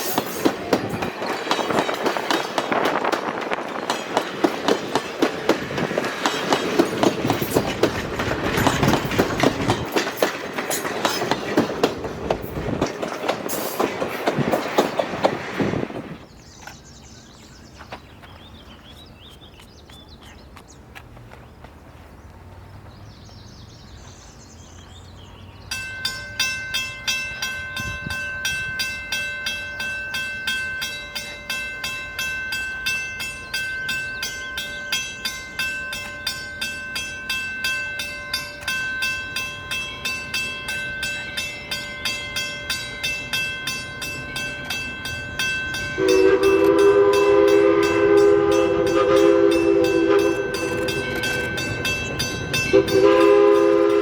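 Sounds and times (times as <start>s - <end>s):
steam locomotive bell ringing: 0.0s - 14.0s, 25.5s - 54.0s
chime steam whistle blowing: 25.9s - 54.0s.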